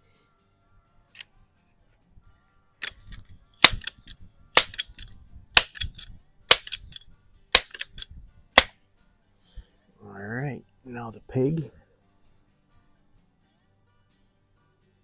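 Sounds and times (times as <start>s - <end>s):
air rifle pump clacks: 2.8s - 7.0s, 7.6s - 8.7s.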